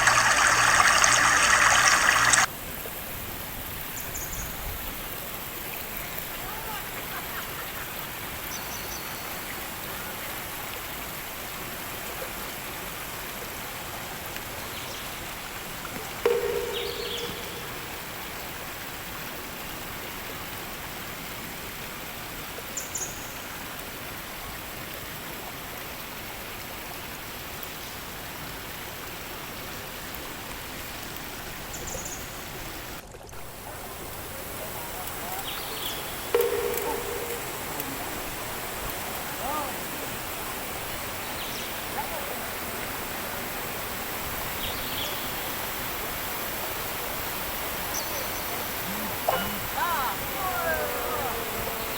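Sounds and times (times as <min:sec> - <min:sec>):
river water flowing: 0:00.0 - 0:22.8, 0:23.4 - 0:51.9
short high chirps: 0:16.3 - 0:18.0, 0:36.4 - 0:37.9.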